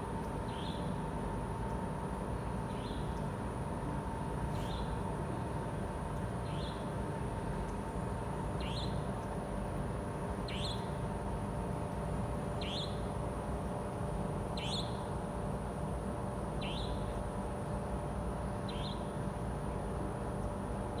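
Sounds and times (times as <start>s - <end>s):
steady background hum: 0.0s - 21.0s.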